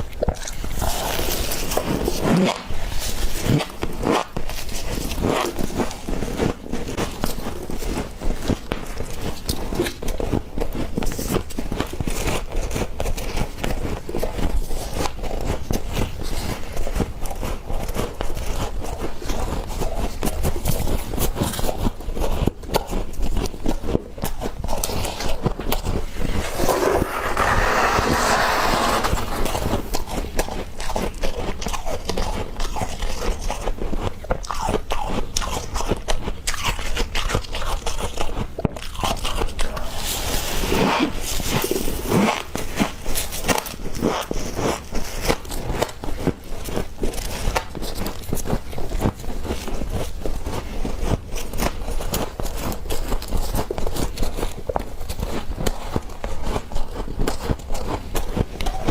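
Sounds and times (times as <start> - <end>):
frost being chewed: 0.0 - 58.9
rushing scraping noise: 26.0 - 30.2.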